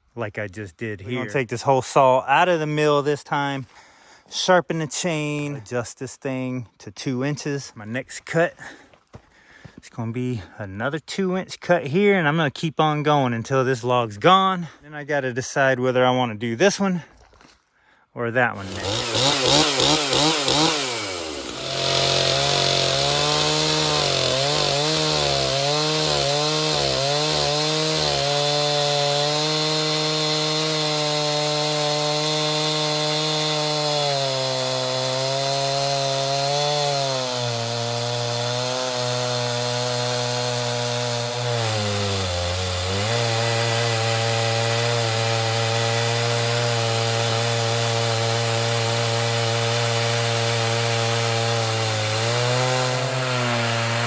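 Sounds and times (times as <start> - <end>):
chainsaw cutting log: 18.6 - 54.0.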